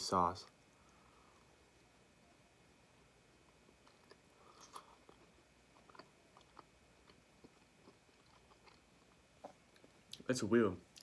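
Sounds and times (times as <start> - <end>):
faint biting and chewing: 3.3 - 10.3.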